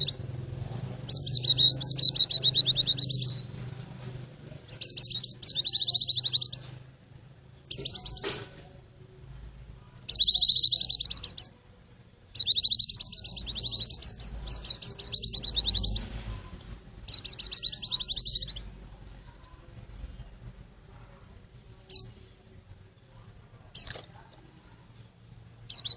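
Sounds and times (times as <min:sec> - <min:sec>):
bird twittering trills: 0:00.0 - 0:00.3, 0:01.0 - 0:03.6, 0:04.7 - 0:06.7, 0:07.7 - 0:08.4, 0:10.1 - 0:11.6, 0:12.3 - 0:16.2, 0:17.0 - 0:18.7, 0:21.8 - 0:22.2, 0:25.7 - 0:25.9.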